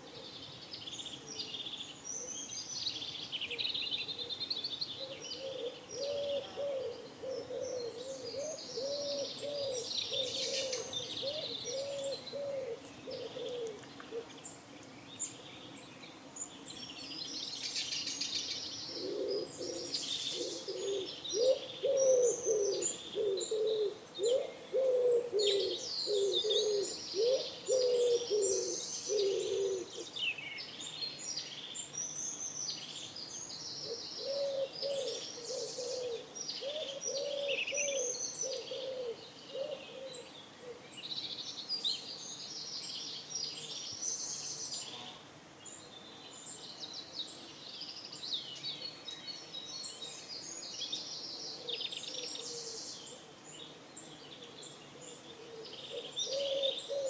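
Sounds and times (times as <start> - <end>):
small birds chirping: 0.0 - 57.0
pigeons cooing: 5.1 - 14.3, 18.9 - 30.1, 33.8 - 40.9, 55.3 - 57.0.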